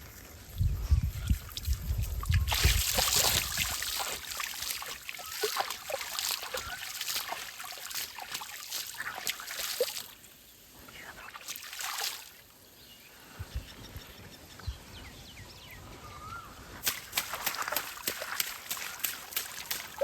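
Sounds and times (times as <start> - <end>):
water splashing and trickling: 0.5 - 12.6, 16.8 - 20.0.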